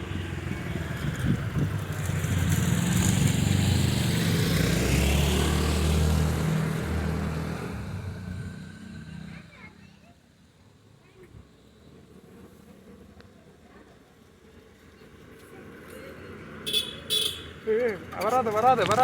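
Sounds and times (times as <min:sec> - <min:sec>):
vehicle engine passing by: 0:00.0 - 0:09.8.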